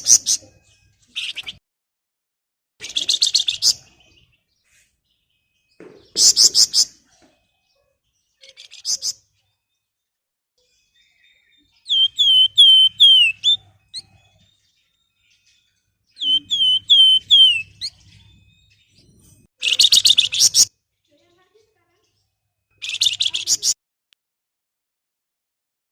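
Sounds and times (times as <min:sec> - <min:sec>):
songbird whistling falling notes: 0:11.8 - 0:13.6, 0:16.2 - 0:17.9.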